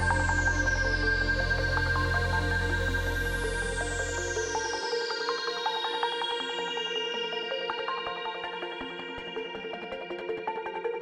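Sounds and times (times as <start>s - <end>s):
electronic synthesizer music: 0.0s - 5.0s.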